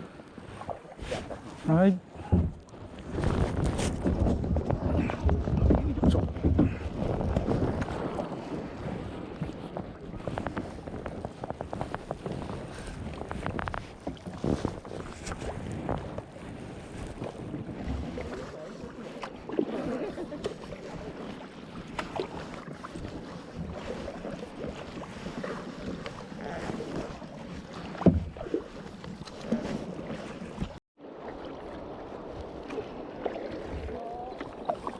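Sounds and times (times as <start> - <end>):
wind on microphone: 0.0 - 30.8
water splashing: 0.0 - 34.9
knocks against kayak hull: 2.2 - 2.6, 28.0 - 28.4.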